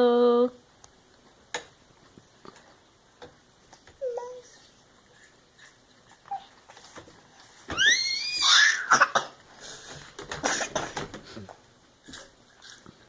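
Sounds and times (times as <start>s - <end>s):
animal high cry: 7.8s - 9.0s.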